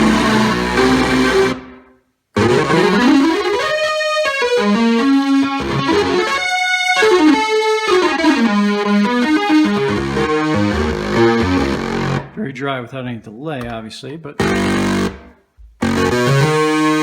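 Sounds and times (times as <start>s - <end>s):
analog synthesizer notes: 0.0s - 4.0s, 14.4s - 17.0s.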